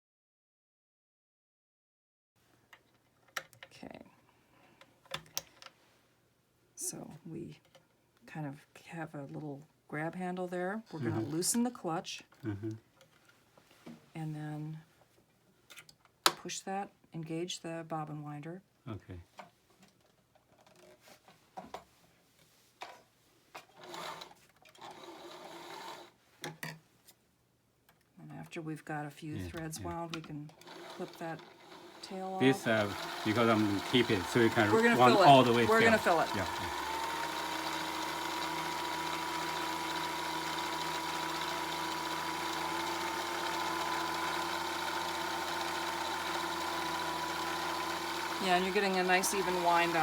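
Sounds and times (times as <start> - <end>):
sewing machine running: 11.0 - 11.4, 23.8 - 26.1, 30.6 - 50.0.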